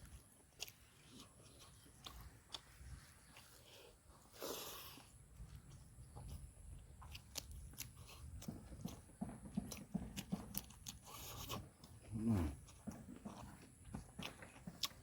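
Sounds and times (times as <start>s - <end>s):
person chewing food: 0.0s - 15.0s.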